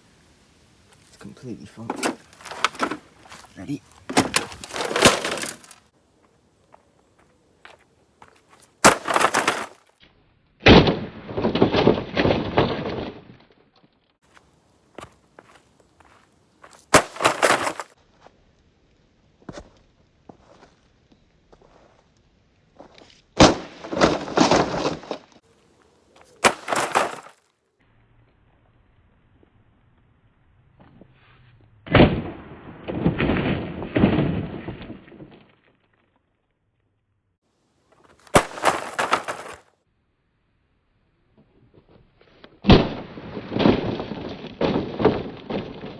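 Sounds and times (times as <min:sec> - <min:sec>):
television smashing: 0:01.8 - 0:05.8, 0:08.8 - 0:09.8, 0:16.9 - 0:17.9, 0:26.4 - 0:27.3, 0:38.2 - 0:39.6
clatter of pieces: 0:04.1 - 0:05.8, 0:08.8 - 0:09.9, 0:16.9 - 0:18.0, 0:26.4 - 0:27.4, 0:38.0 - 0:39.7.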